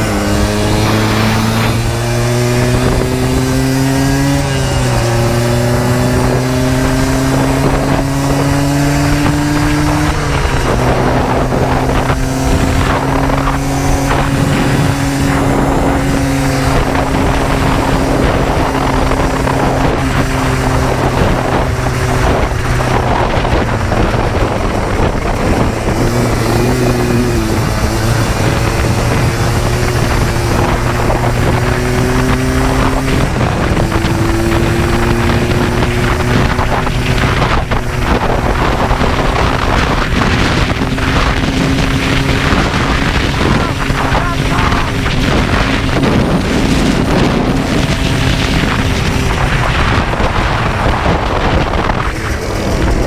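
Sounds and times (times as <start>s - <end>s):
two-stroke engine at full throttle: 0.0s - 53.0s
wind buffeting microphone: 0.0s - 53.0s.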